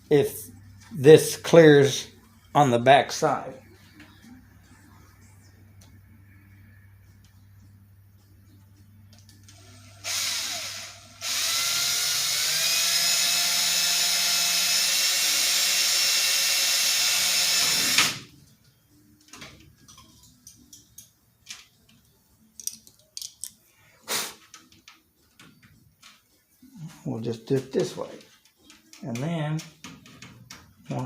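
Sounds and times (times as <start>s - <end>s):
power drill whine: 9.5s - 18.2s.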